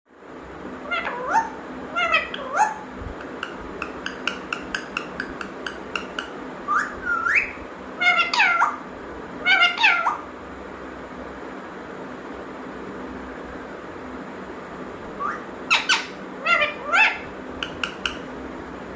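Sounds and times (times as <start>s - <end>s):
parrot calling and whistling: 0.8s - 10.3s, 15.2s - 18.3s.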